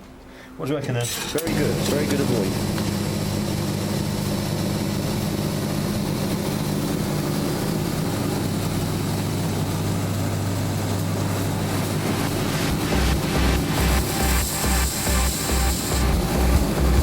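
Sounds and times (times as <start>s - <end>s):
belt grinder motor humming: 1.1s - 9.9s.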